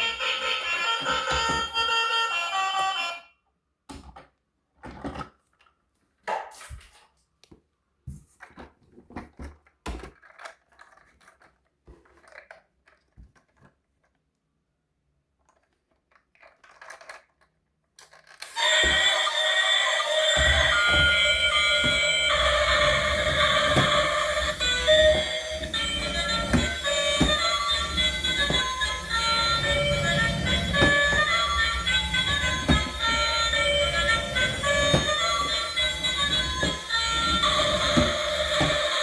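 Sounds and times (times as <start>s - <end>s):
music: 0.0s - 3.3s, 18.6s - 39.0s
plastic toy vehicles clattering: 4.0s - 7.2s, 8.4s - 14.4s, 15.4s - 39.0s.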